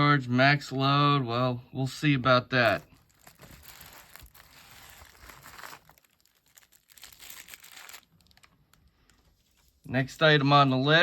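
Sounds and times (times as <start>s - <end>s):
paper packaging crinkling: 2.6s - 9.8s.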